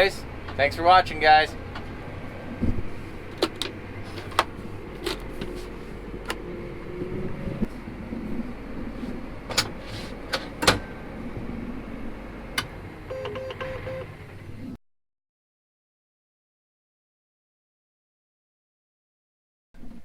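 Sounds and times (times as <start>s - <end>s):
low vehicle rumble: 0.0s - 14.8s.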